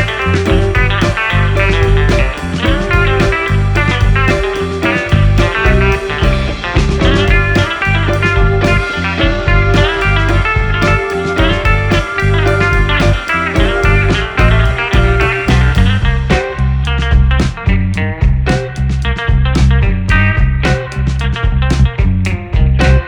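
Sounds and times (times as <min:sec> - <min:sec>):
instrumental music with plucked melody: 0:00.0 - 0:23.0.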